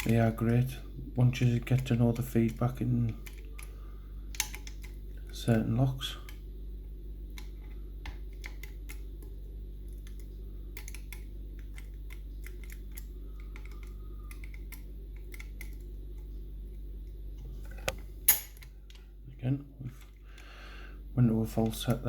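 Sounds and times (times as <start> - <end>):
steady low hum: 0.0 - 22.0
lock picking metallic clicks: 4.3 - 5.4, 9.9 - 16.3.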